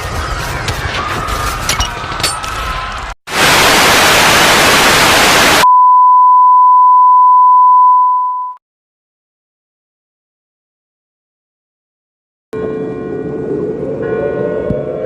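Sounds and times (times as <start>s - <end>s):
loud static hiss: 3.3s - 5.6s.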